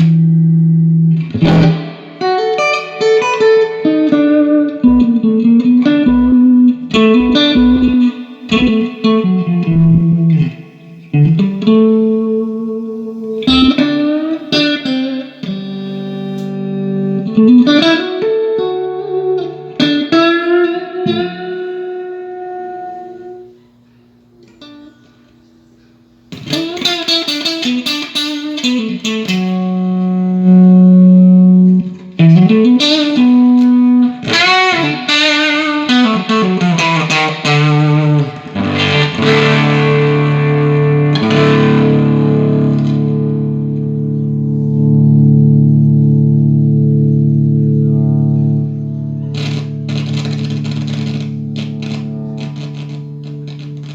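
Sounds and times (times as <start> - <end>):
electric guitar playing: 0.0 - 25.2, 26.3 - 53.9.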